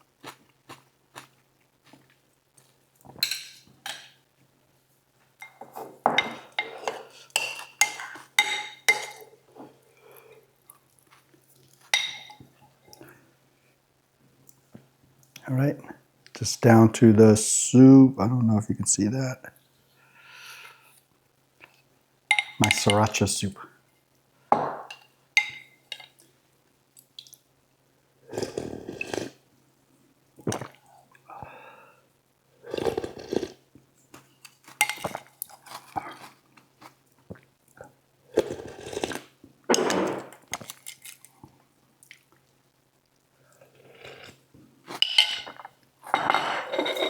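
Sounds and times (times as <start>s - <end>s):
spoon clinking against bowl: 5.4s - 9.2s, 12.0s - 12.4s, 22.3s - 23.0s, 24.7s - 26.1s, 45.0s - 47.0s
slurping soup: 28.3s - 29.4s, 32.7s - 33.6s, 38.3s - 40.2s, 43.6s - 47.0s.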